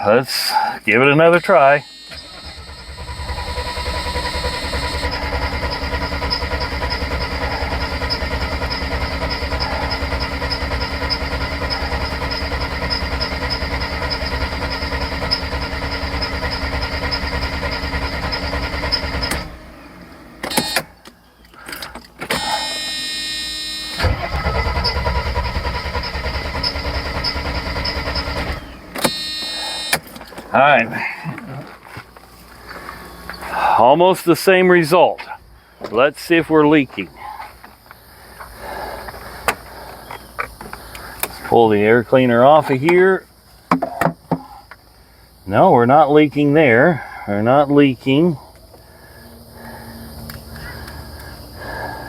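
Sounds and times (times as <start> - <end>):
engine running: 1.0 - 42.9, 46.2 - 52.0
engine starter cranking: 1.2 - 31.1.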